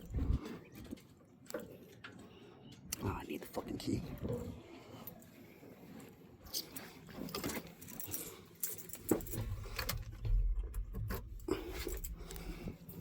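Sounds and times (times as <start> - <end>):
low rumble: 0.0 - 0.4
keys jangling: 6.5 - 10.0.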